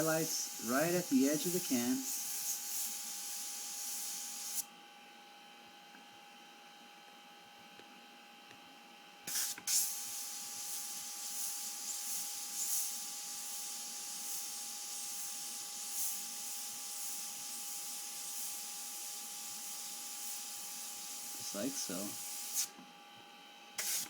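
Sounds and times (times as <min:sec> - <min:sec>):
airbrush spraying hiss: 0:00.0 - 0:04.6, 0:09.3 - 0:22.7, 0:23.8 - 0:24.0.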